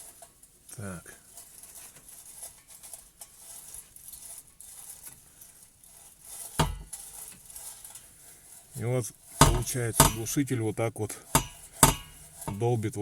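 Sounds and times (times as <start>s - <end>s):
loud metallic knock: 9.4s - 10.3s, 11.4s - 12.2s.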